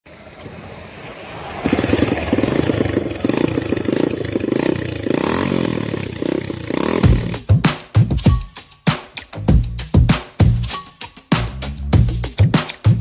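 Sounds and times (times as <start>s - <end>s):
motorcycle engine revving: 1.3s - 7.7s.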